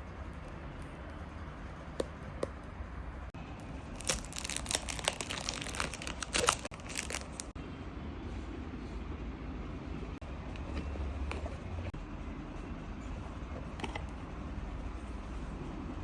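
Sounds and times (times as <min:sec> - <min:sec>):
low steady hum: 0:00.0 - 0:16.0
packaging wrap crinkling and tearing: 0:03.9 - 0:07.5.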